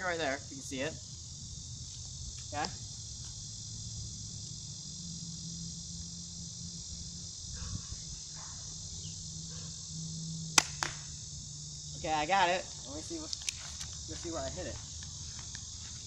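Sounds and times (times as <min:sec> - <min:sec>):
crickets chirping: 0:00.0 - 0:16.0
airsoft gun shots: 0:10.6 - 0:11.1.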